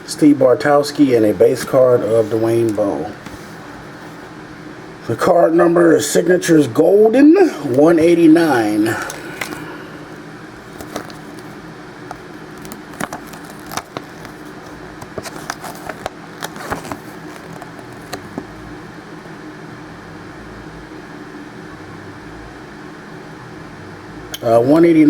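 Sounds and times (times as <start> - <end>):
low room hum: 0.0 - 25.0
trading cards clicking and rustling: 7.8 - 9.8, 10.6 - 18.6.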